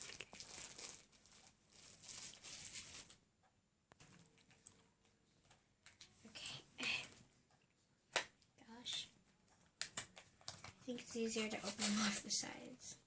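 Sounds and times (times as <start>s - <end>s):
plastic packaging crinkling: 0.0s - 3.2s.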